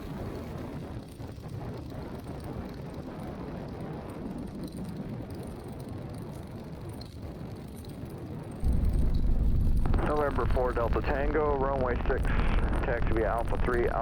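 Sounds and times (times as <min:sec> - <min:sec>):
muffled aircraft engine rumble: 0:00.0 - 0:14.0
radio low hum: 0:08.6 - 0:14.0.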